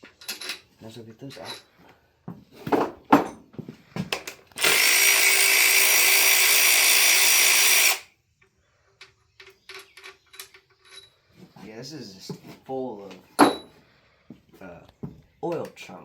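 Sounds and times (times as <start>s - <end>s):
clinks of metal parts: 0.0s - 1.8s, 8.4s - 11.3s, 13.4s - 13.8s
power tool running: 4.5s - 8.1s.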